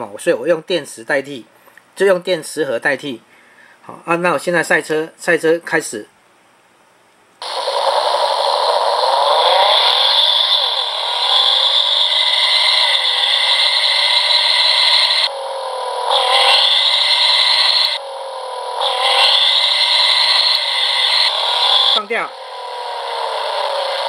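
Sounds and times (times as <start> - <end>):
tinny race car engine effect: 7.4 - 24.0.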